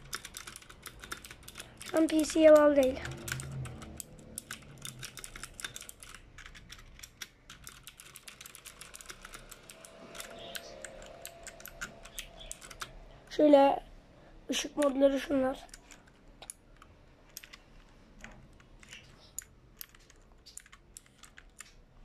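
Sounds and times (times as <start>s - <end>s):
mechanical keyboard key clicks: 0.0s - 13.0s.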